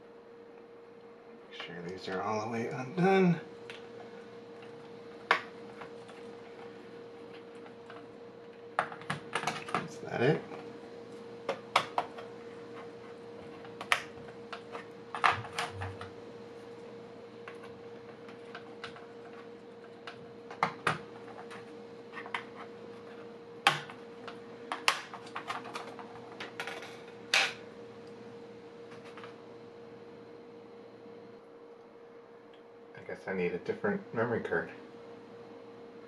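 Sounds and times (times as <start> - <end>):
faint steady hum: 0.0 - 36.0
hands clicking and tapping parts: 8.8 - 9.9.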